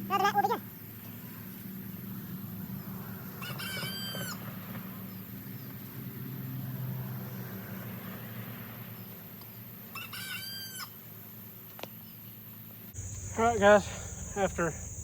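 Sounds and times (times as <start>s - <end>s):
rooster crowing: 3.0s - 4.5s, 9.9s - 10.9s
steady low hum: 13.0s - 15.0s.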